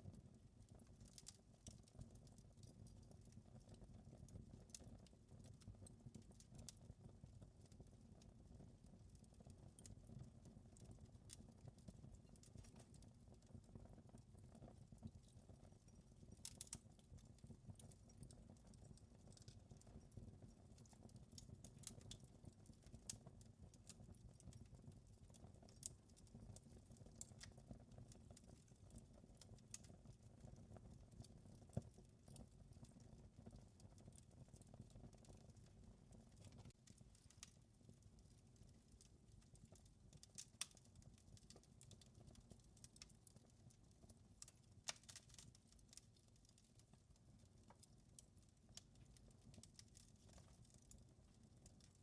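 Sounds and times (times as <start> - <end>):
wood fire crackling and popping: 0.1 - 52.0.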